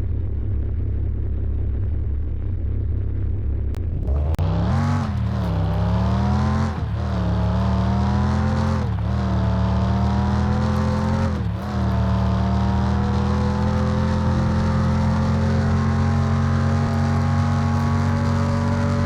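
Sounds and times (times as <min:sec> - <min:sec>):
car engine under load: 0:03.8 - 0:19.0.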